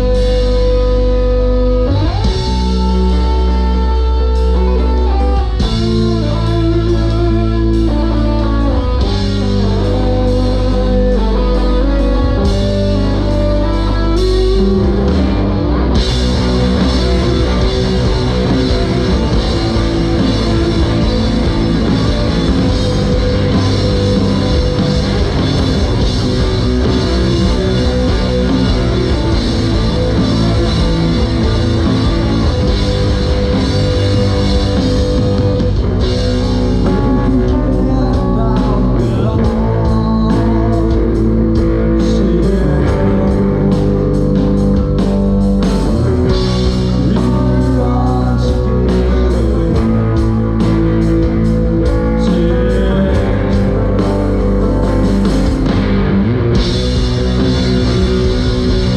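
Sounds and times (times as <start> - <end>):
bass guitar: 0.0 - 58.9
drum kit: 0.0 - 58.9
electric guitar: 0.0 - 58.9
person singing: 16.4 - 45.0, 45.6 - 50.8, 51.8 - 55.0.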